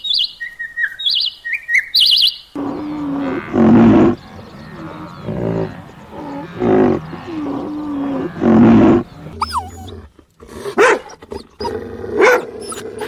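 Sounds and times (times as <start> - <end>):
higher gliding animal calls: 2.6 - 10.4
animal roars: 2.6 - 13.0
long low animal call: 2.6 - 13.0.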